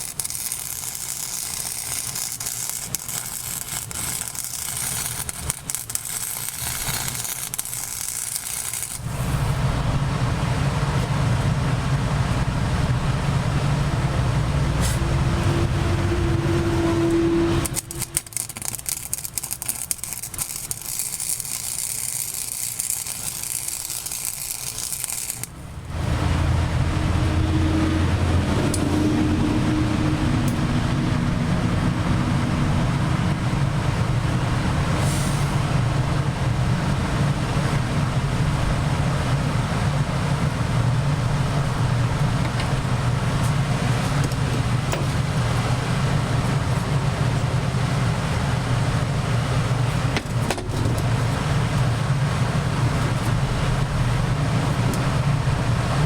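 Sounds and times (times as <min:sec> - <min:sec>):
welding arc crackling hiss: 0:00.0 - 0:09.7, 0:17.6 - 0:26.2
low machine rumble with hum: 0:00.0 - 0:56.0.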